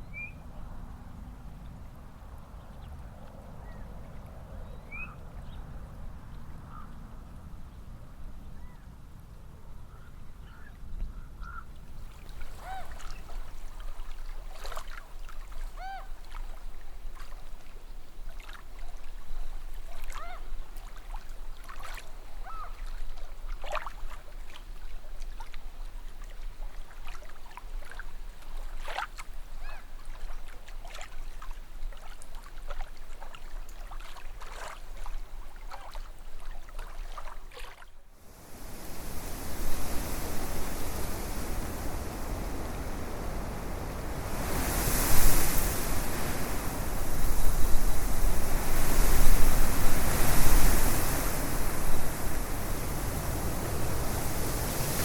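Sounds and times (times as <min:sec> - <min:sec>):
birds calling: 0:10.5 - 0:11.7
steady hiss: 0:38.2 - 0:55.0.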